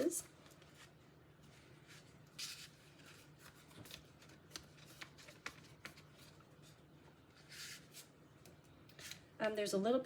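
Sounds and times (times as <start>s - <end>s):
low room hum: 0.0s - 10.0s
paper rustling: 0.5s - 8.1s.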